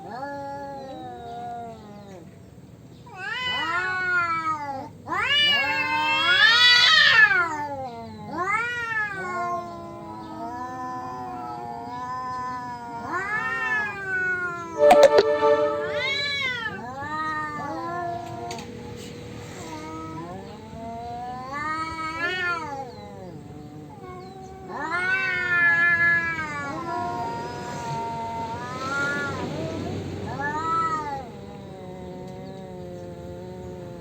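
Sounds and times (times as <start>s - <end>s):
cats caterwauling: 3.1s - 14.5s, 23.9s - 27.7s.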